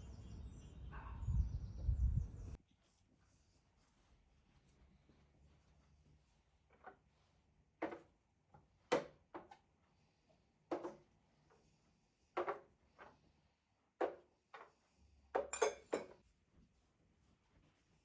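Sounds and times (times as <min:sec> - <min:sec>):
dishes and cutlery clinking: 0:15.4 - 0:16.2.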